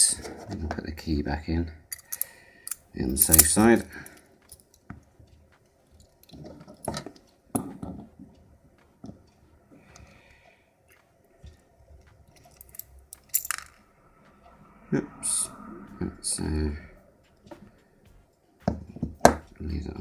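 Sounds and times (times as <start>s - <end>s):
lock cylinder metallic clicks: 1.9s - 3.6s, 12.4s - 13.8s.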